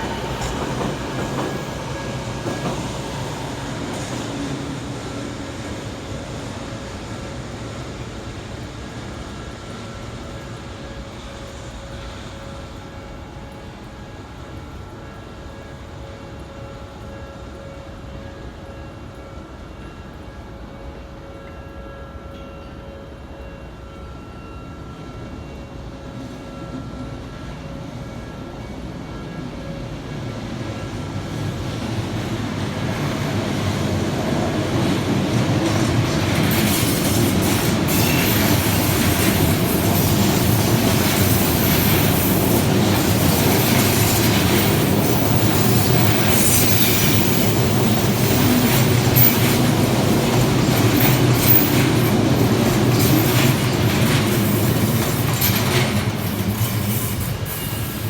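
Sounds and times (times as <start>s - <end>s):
electric train passing: 0.0s - 58.0s
high wheel squeal: 43.6s - 49.7s, 56.6s - 58.0s.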